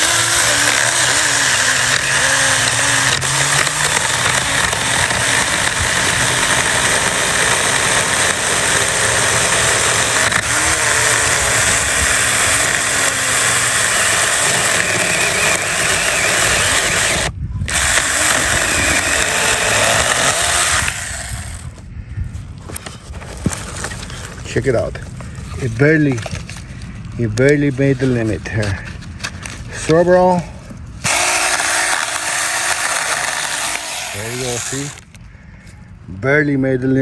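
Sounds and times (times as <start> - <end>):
electric chainsaw cutting branch: 0.0 - 21.8, 31.0 - 35.2.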